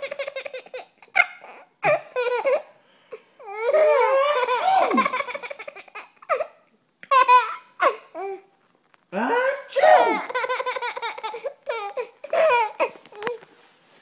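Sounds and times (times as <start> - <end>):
young child laughing: 4.1 - 6.1.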